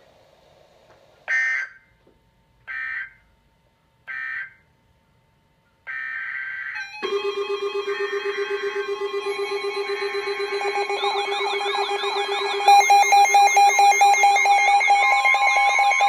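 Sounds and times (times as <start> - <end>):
buzzy digital data bursts: 7.0 - 16.0
pulsing electronic alert tone: 7.0 - 16.0.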